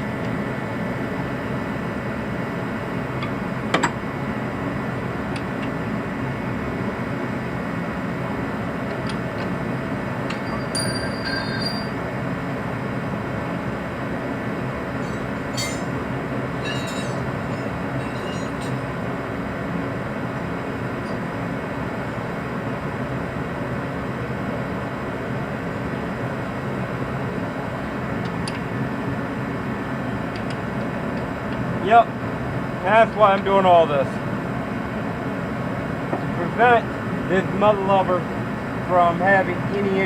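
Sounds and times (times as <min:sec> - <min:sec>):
steady machine drone: 0:00.0 - 0:31.6
faint metallic clinks: 0:10.3 - 0:12.0, 0:15.0 - 0:18.9.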